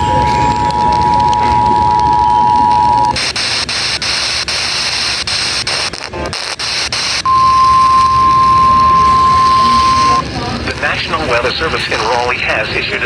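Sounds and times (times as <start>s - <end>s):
steady alarm tone: 0.0s - 3.2s, 7.2s - 10.3s
two-tone alert signal: 0.0s - 3.2s, 7.3s - 10.2s
radio static with clicks: 0.4s - 8.4s.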